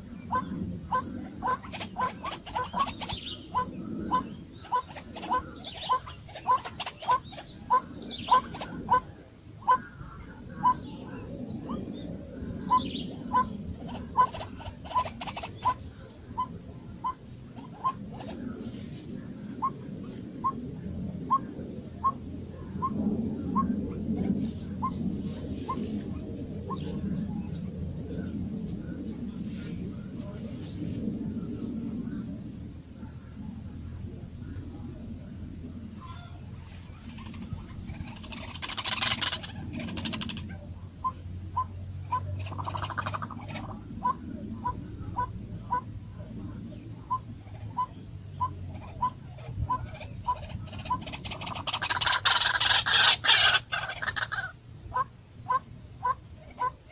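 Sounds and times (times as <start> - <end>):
bird chirping: 0.0 - 18.9
low steady rumble: 0.0 - 56.9
steady low hum: 0.0 - 56.9.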